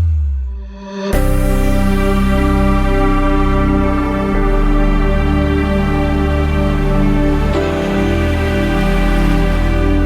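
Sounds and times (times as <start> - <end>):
synthesised chords: 0.5 - 10.0.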